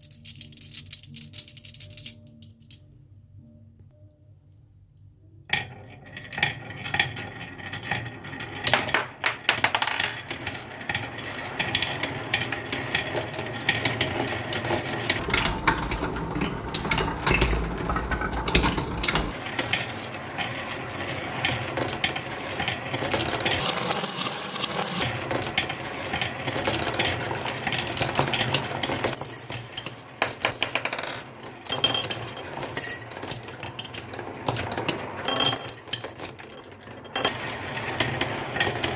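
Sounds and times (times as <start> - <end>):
marbles clattering down wooden run: 6.2 - 15.2, 19.3 - 38.9.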